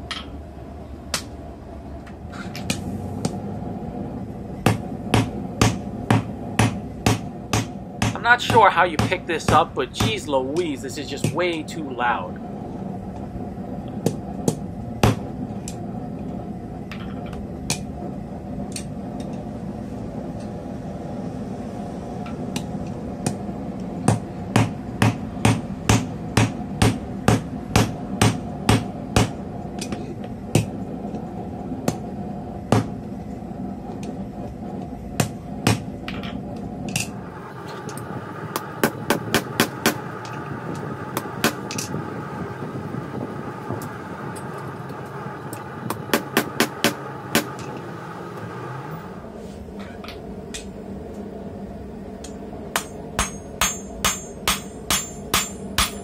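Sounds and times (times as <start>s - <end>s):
steady background noise: 0.0s - 56.0s
hammer striking steel on anvil: 52.2s - 56.0s.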